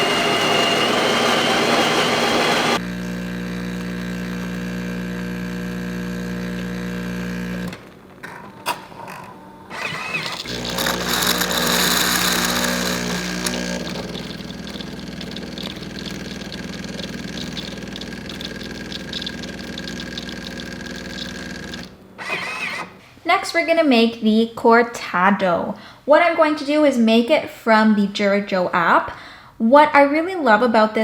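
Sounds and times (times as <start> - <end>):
coffee grinder grinding: 0.0 - 7.8, 9.8 - 22.9
espresso machine pump humming: 0.0 - 7.8, 9.7 - 22.9
hot water hissing: 10.4 - 21.9.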